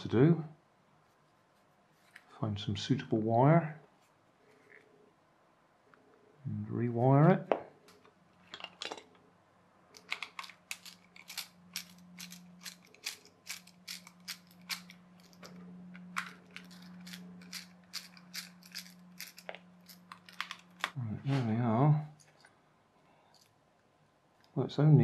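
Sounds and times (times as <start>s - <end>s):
faint steady low hum: 0.0s - 25.0s
plastic parts clicking and rattling: 7.9s - 9.2s, 9.9s - 21.0s.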